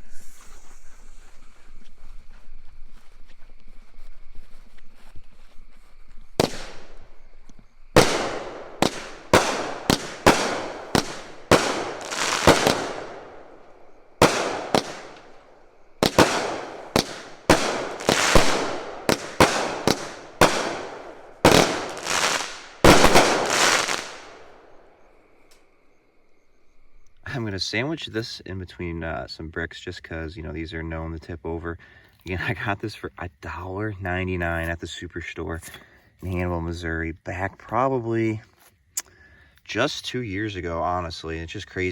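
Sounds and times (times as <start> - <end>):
fireworks bangs: 6.3 - 24.9.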